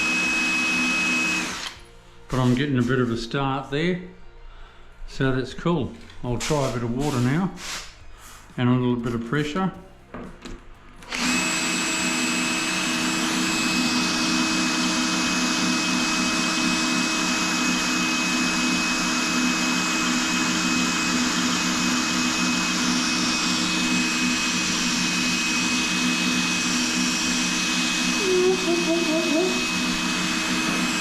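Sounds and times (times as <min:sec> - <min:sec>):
power drill grinding into tile: 0:00.0 - 0:01.8, 0:11.0 - 0:31.0.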